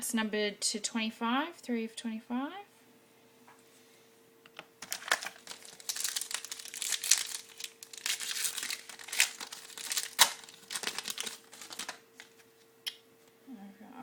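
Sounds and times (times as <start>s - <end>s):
foil wrapper crinkling: 4.8s - 12.5s.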